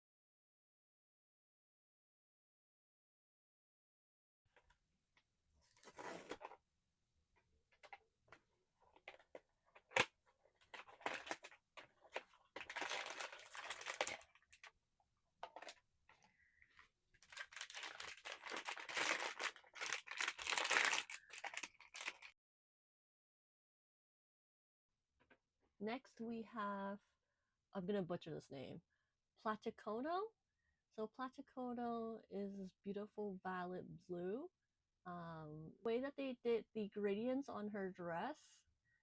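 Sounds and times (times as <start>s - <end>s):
packaging tearing and crinkling: 5.7s - 6.6s, 8.9s - 14.7s, 17.2s - 22.3s.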